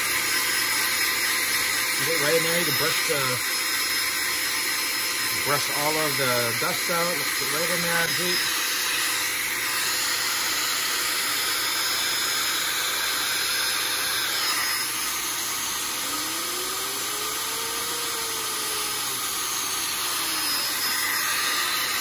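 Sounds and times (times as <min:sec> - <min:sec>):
electric air duster blowing: 0:00.0 - 0:22.0
faint tone rising and falling: 0:16.0 - 0:19.4.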